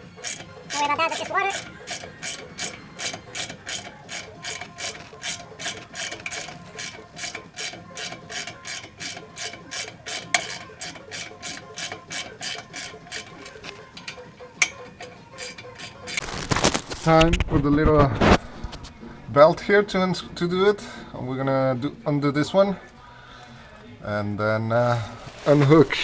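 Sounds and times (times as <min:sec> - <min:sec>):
ratchet wrench clicking: 0:00.0 - 0:16.5.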